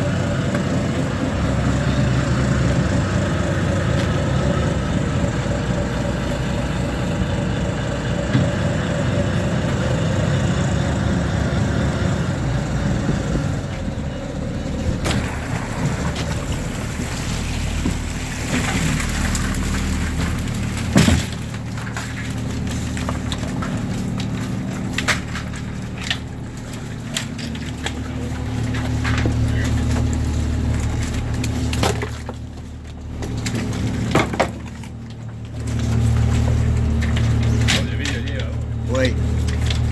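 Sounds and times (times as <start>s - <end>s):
boat engine running: 0.0s - 39.9s.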